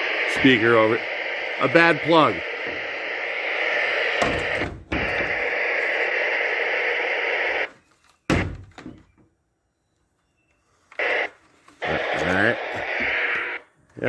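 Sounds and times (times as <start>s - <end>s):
radio static hissing: 0.0s - 7.8s, 11.0s - 13.6s
thump: 8.3s - 9.0s.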